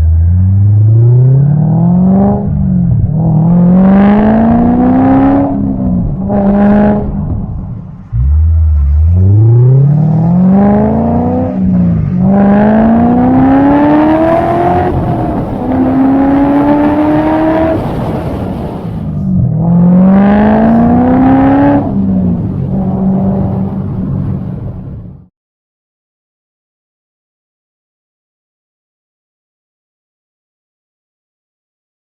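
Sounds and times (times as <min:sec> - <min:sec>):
car engine revving through gears: 0:00.0 - 0:23.9.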